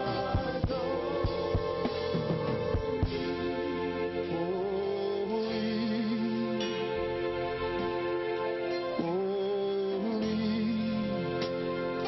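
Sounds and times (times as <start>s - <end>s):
slow worship music: 0.0s - 12.0s.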